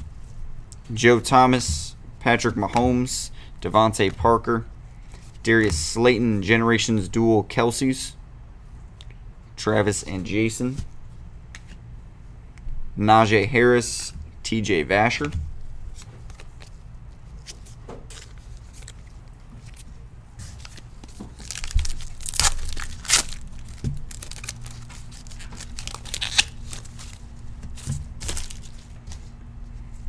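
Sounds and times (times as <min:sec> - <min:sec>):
cards sliding and rustling: 0:15.9 - 0:29.3
foil wrapper tearing and crinkling: 0:20.6 - 0:29.0.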